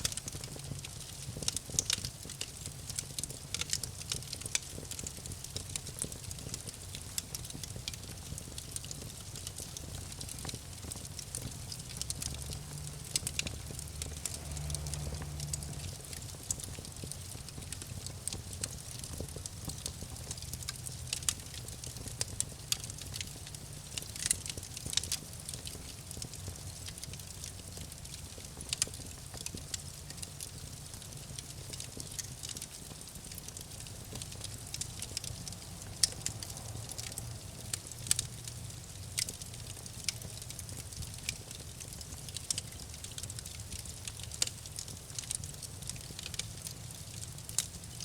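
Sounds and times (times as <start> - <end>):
campfire crackling and popping: 0.0 - 48.0
low steady rumble: 10.0 - 22.2, 32.9 - 39.6.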